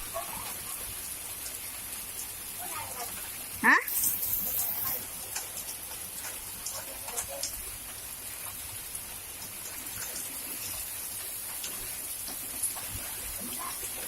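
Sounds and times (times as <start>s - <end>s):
heavy rain hiss: 0.0s - 14.0s.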